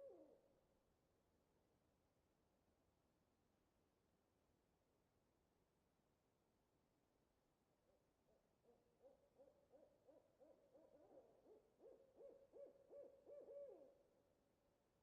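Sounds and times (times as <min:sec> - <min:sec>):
owl hooting: 0:00.0 - 0:00.4, 0:08.6 - 0:14.0.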